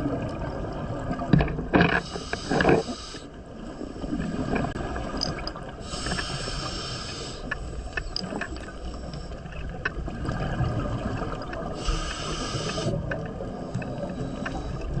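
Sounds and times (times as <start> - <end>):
water rumbling: 0.0 - 15.0
hiss: 2.1 - 3.3, 5.8 - 7.8, 11.8 - 13.0.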